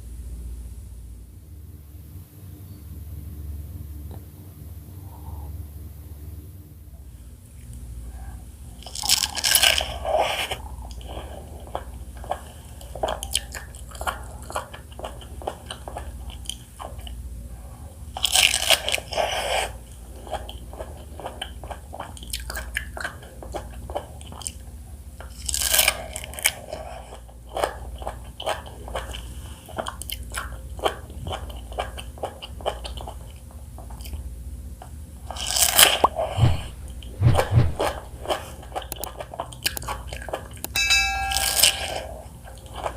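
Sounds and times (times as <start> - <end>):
crunching bites of fruit: 8.8 - 10.6
chewing and wet mouth clicks: 20.3 - 24.6, 38.2 - 40.8.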